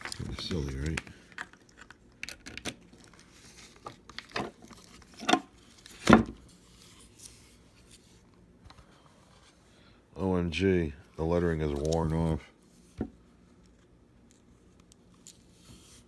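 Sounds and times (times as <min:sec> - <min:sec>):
packaging rustling: 0:00.0 - 0:08.0.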